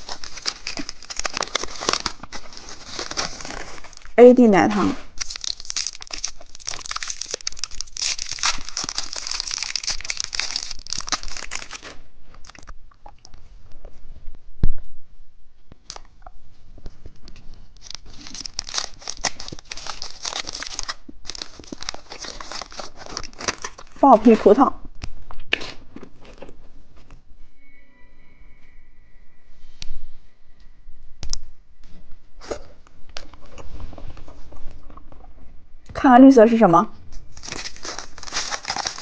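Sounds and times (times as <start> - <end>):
plastic wrapper crinkling: 0.0 - 4.2, 5.0 - 13.3, 17.7 - 26.6, 37.1 - 39.0.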